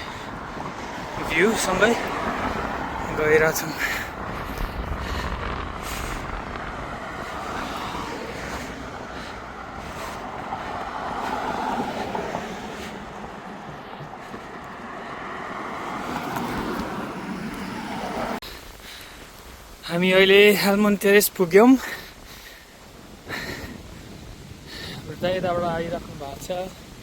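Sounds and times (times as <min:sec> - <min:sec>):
passing motor traffic: 0:00.0 - 0:18.4
wind on microphone: 0:00.0 - 0:18.4, 0:22.6 - 0:27.0.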